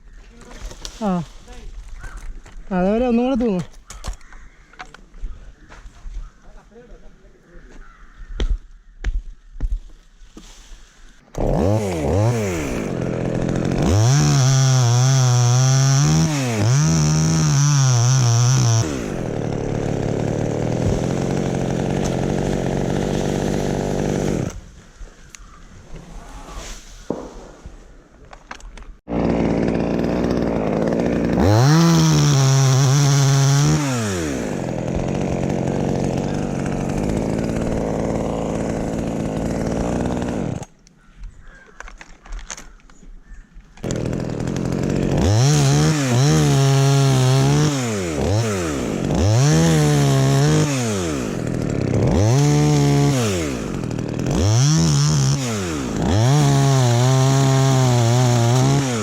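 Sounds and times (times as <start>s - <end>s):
chainsaw revving and idling: 11.3s - 24.6s, 29.1s - 40.7s, 43.8s - 59.0s.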